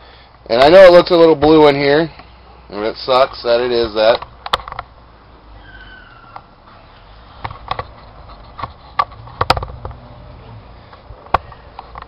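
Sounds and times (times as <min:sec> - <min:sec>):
handling clicks and knocks: 0:04.0 - 0:04.9, 0:07.4 - 0:10.0.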